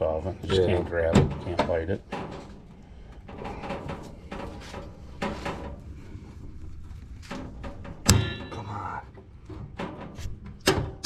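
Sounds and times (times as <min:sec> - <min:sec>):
loud metal clank: 0:07.6 - 0:08.8.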